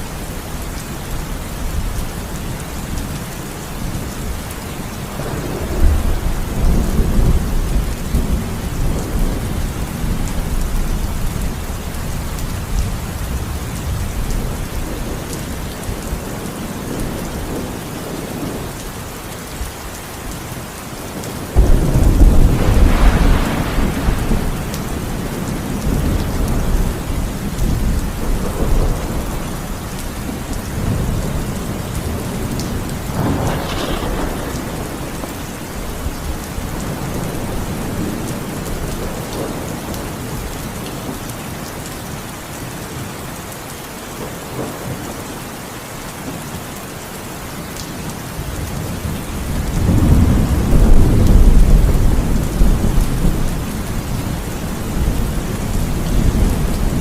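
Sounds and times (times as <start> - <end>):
heavy rain: 0.0 - 57.0
rolling thunder: 5.2 - 15.2, 21.3 - 40.0, 48.8 - 57.0
loud thunder clap: 21.6 - 25.1, 33.1 - 35.3.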